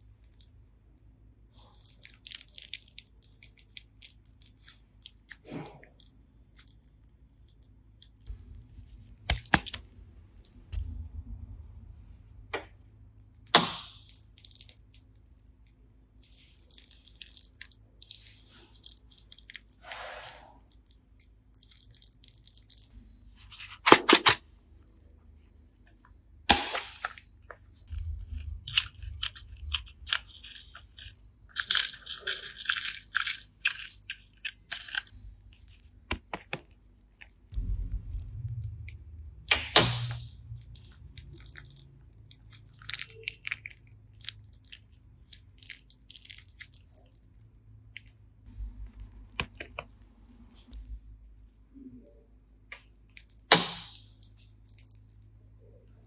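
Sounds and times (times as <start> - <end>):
slime squishing and crackling: 1.6 - 10.9, 12.6 - 24.4, 26.5 - 37.7, 39.0 - 49.8
sharp slime snaps: 26.5 - 27.2.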